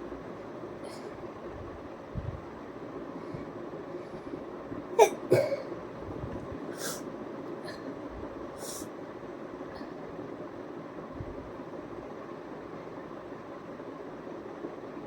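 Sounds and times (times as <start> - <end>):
person sneezing: 5.0 - 5.7
breathy sniffs: 8.6 - 8.9.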